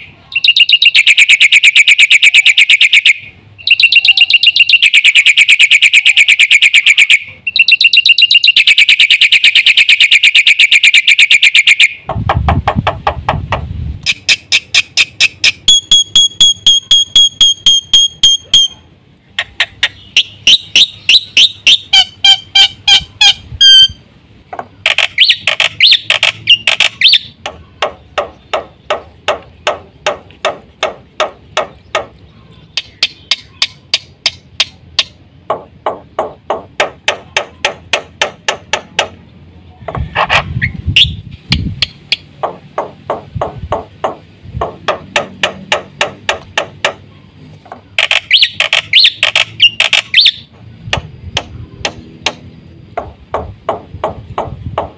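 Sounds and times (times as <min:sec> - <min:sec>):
bird chattering trills: 0:00.0 - 0:13.2, 0:14.0 - 0:38.0, 0:46.6 - 0:50.5.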